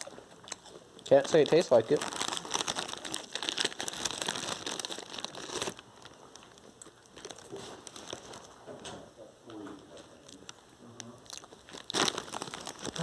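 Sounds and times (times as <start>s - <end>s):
plastic wrapper crinkling: 1.1s - 8.6s, 11.3s - 13.0s.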